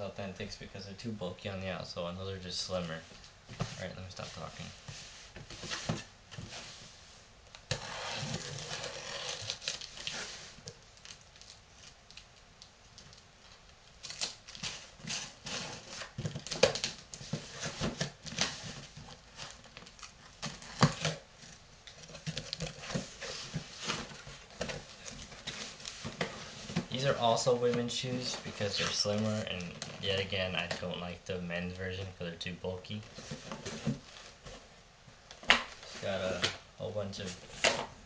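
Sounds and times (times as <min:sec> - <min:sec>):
cardboard and paper being handled: 0:02.6 - 0:12.0, 0:14.0 - 0:31.1
cardboard rustling and tearing: 0:07.7 - 0:12.0, 0:14.0 - 0:30.9.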